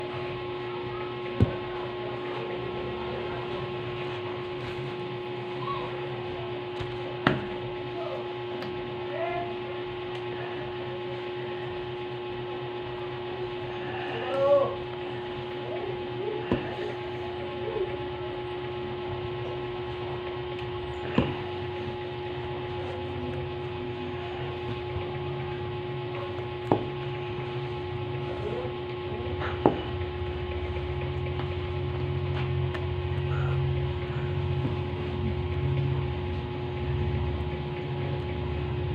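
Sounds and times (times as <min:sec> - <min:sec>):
electrical hum: 0:00.0 - 0:38.9.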